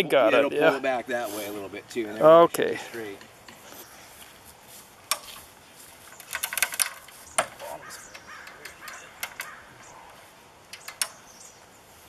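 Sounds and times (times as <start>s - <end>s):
ratchet clicking: 10.7s - 11.2s.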